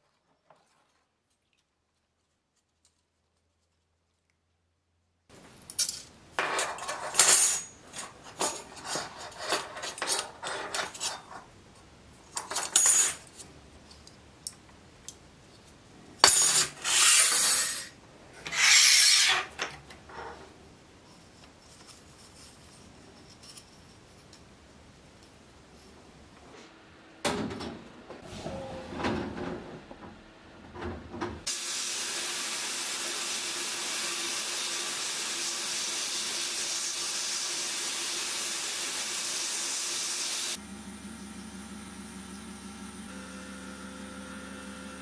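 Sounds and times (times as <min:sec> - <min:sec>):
metal scraping on steel scabbard: 0:06.6 - 0:11.5, 0:16.2 - 0:20.4
faint handling noise: 0:19.7 - 0:26.7.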